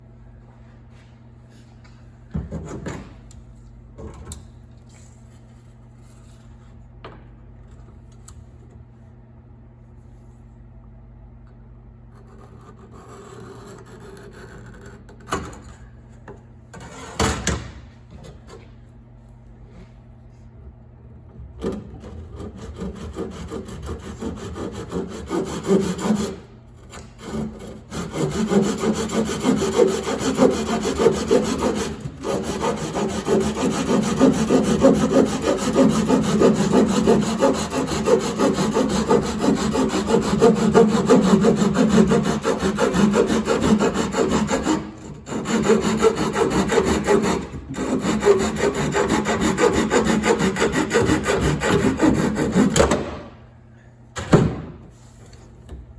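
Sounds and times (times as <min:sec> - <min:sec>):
hand saw cutting: 0:22.4 - 0:53.0.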